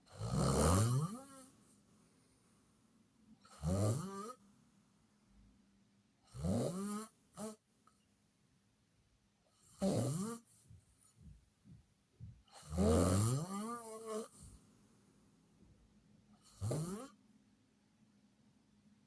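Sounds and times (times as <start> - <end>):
person snoring loudly: 0.1 - 1.4, 3.5 - 4.4, 6.3 - 7.1, 9.8 - 10.4, 12.5 - 14.4, 16.5 - 17.2.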